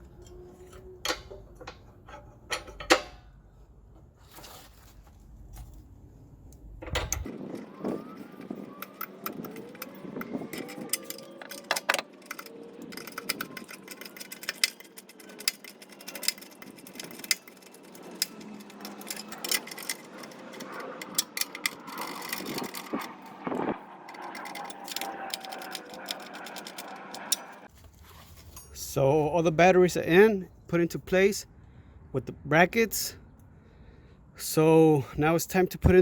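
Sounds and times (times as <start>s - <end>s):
metal clicks and rattles of brackets: 6.8s - 23.4s.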